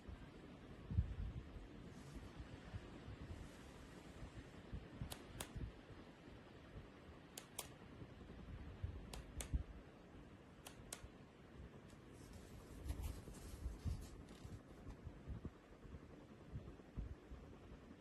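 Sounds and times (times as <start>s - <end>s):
light sharp clicks: 5.0s - 5.6s, 7.3s - 7.8s, 9.1s - 9.6s, 10.6s - 11.1s.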